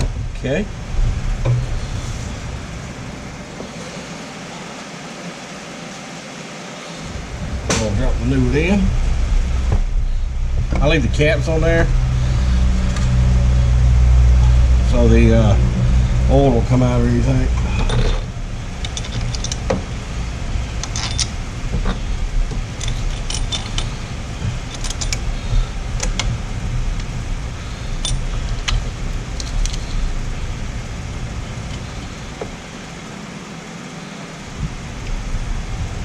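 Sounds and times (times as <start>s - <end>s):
steady low rumble: 0.0s - 5.5s, 6.7s - 36.0s.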